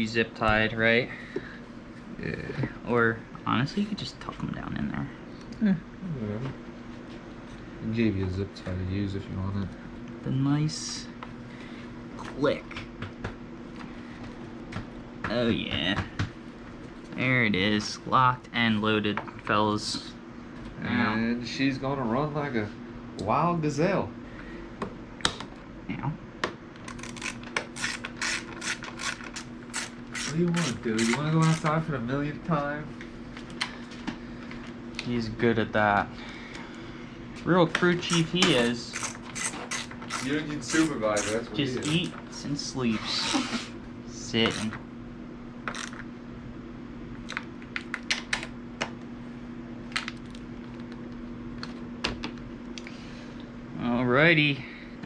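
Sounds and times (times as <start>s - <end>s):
steady low hum: 0.0s - 55.0s
ratchet wrench clicking: 26.9s - 31.7s, 38.1s - 42.1s, 45.7s - 46.0s.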